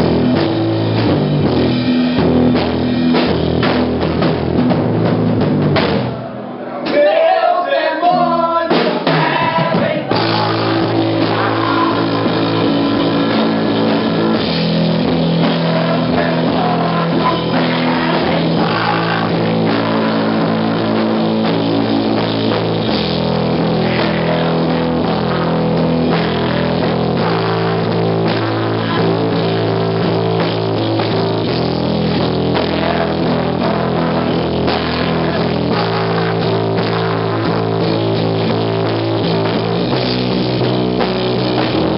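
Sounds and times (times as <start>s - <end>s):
drum hits: 0.0s - 6.3s
blues-rock band playing: 0.0s - 7.0s, 8.2s - 41.9s.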